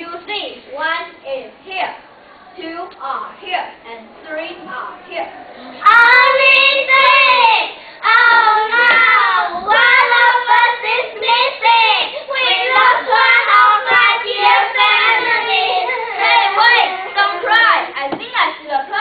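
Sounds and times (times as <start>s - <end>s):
children singing: 5.6s - 18.1s.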